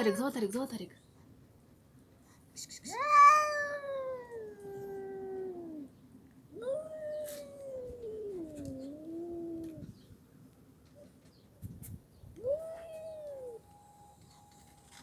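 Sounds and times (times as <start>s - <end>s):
cat yowling: 0.0s - 0.3s, 2.8s - 9.9s, 12.4s - 15.0s.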